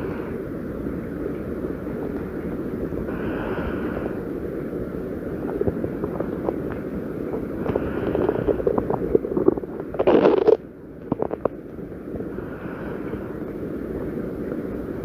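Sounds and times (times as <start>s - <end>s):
stomach growling and gurgling: 5.3s - 11.8s.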